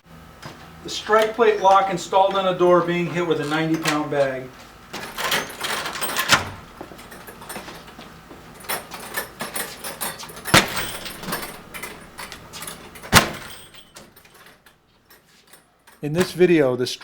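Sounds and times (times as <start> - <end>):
heavy bag banging into door: 4.9 - 7.8, 8.8 - 14.2
metallic rattling of door: 4.9 - 7.8, 8.6 - 14.6.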